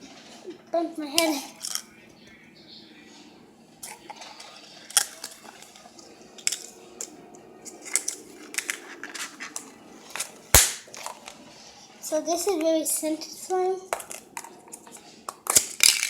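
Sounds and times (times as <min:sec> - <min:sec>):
small hard objects clicking: 0:13.9 - 0:16.0.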